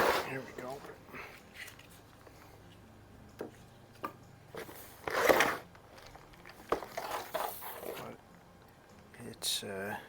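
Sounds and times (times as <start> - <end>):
packing rustling and scraping: 4.5 - 8.2.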